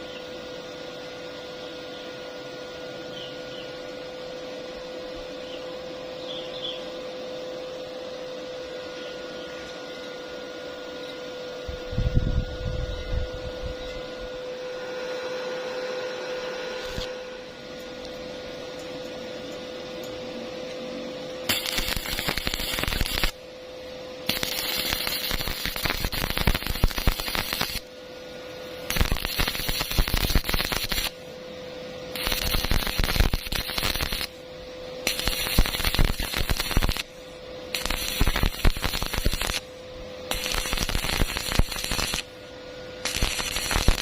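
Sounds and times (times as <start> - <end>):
steady hum: 0.0 - 44.0
welding arc crackling: 16.8 - 17.2, 21.4 - 23.4, 24.2 - 27.9, 28.8 - 31.2, 32.1 - 34.4, 35.0 - 39.6, 40.3 - 42.4, 43.0 - 44.0.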